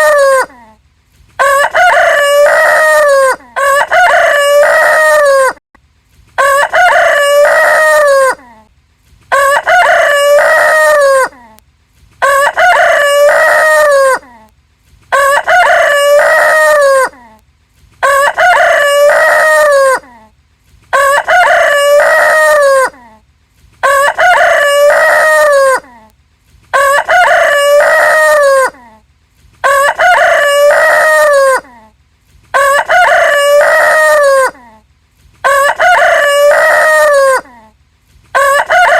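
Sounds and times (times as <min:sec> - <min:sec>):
rooster crowing: 0:01.4 - 0:05.6, 0:06.4 - 0:08.4, 0:09.3 - 0:11.3, 0:12.2 - 0:14.3, 0:15.1 - 0:17.2, 0:18.0 - 0:20.1, 0:20.9 - 0:23.0, 0:23.8 - 0:25.9, 0:26.8 - 0:28.8, 0:29.6 - 0:31.7, 0:32.6 - 0:34.6, 0:35.4 - 0:37.5, 0:38.4 - 0:38.9.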